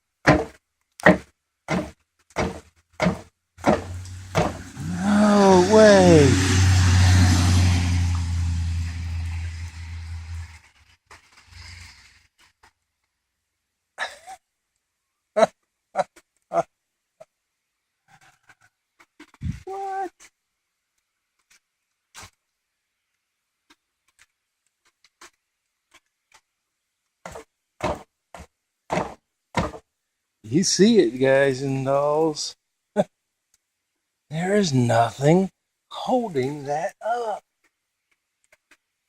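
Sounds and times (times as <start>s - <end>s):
dull thuds: 0.2s - 4.8s, 27.2s - 29.9s
vehicle passing by: 3.8s - 12.1s
faint irregular ticks: 20.0s - 27.2s, 33.5s - 33.7s, 37.5s - 39.0s.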